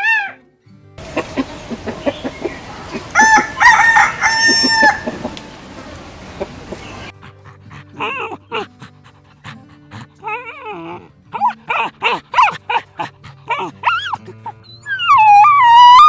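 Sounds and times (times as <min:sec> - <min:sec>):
small dog yapping: 0:01.1 - 0:05.4, 0:11.4 - 0:14.2, 0:14.9 - 0:16.0
dog whining yelp: 0:13.5 - 0:16.0.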